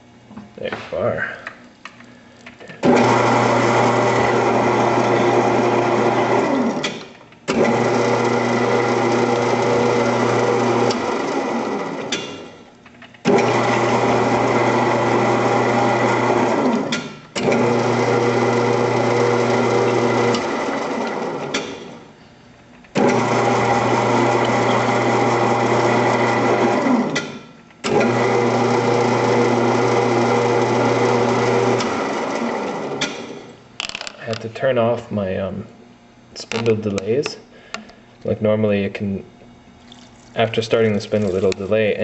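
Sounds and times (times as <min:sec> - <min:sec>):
lathe motor hum and whine: 0:02.8 - 0:06.9, 0:07.5 - 0:12.5, 0:13.3 - 0:22.0, 0:23.0 - 0:27.2, 0:27.8 - 0:33.6.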